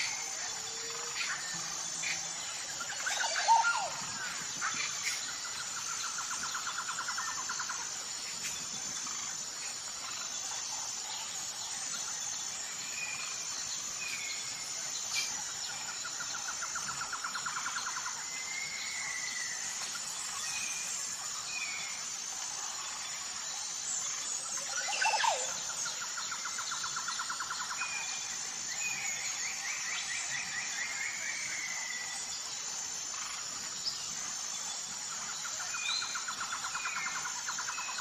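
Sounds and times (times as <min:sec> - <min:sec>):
birds chirping and trilling: 0:00.0 - 0:22.0
insects buzzing: 0:00.0 - 0:38.0.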